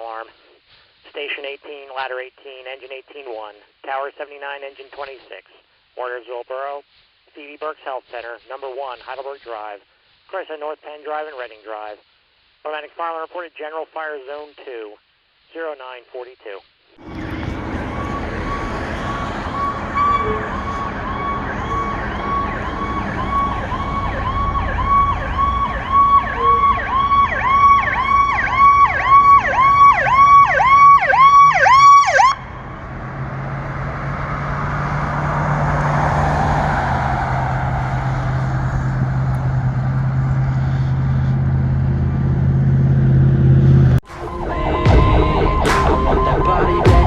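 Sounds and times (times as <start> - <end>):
vehicle engine droning: 17.0 - 30.6, 32.3 - 47.0
emergency vehicle siren: 17.0 - 42.0, 44.0 - 47.0.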